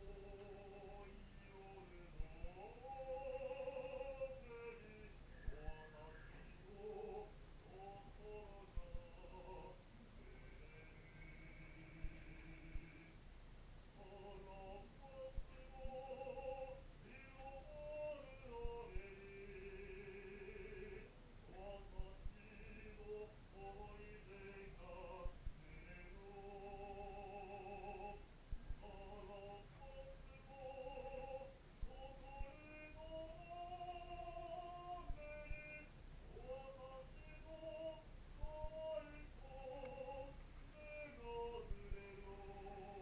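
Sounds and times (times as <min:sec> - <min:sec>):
classical singer singing: 0:00.0 - 0:13.3, 0:13.9 - 0:43.0.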